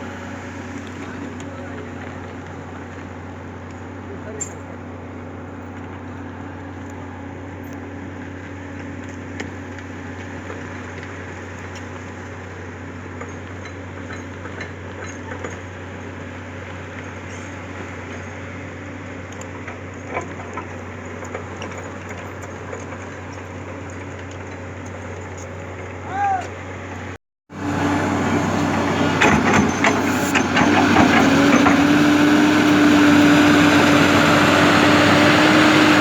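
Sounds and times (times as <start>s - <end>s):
excavator diesel engine running: 0.0s - 26.0s, 26.6s - 36.0s
sharp metallic knocks: 28.7s - 32.4s.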